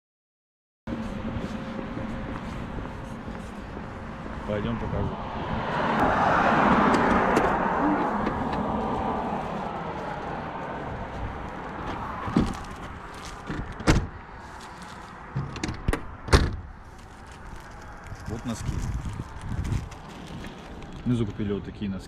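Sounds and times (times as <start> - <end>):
car passing by: 1.2 - 13.4.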